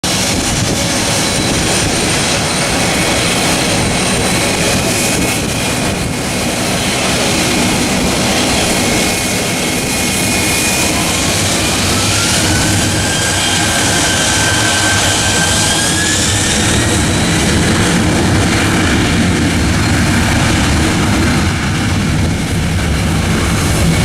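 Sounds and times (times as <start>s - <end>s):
jet engines roaring: 0.0s - 24.0s
turbine whine: 0.0s - 24.0s.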